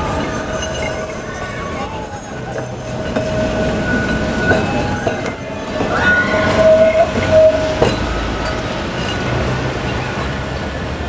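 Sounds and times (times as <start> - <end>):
tram rumble: 0.0 - 11.0
tram wheels squealing: 0.0 - 11.0.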